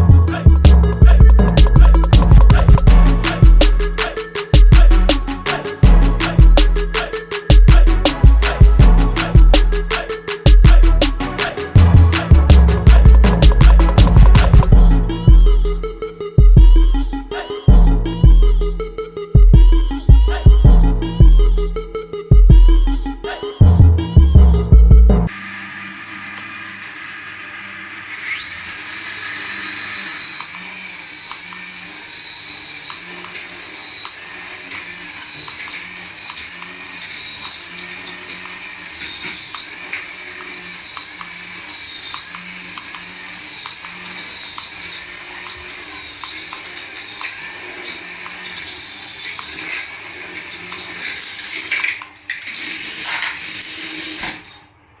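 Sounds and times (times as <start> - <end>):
small electric motor whining: 25.3 - 54.6.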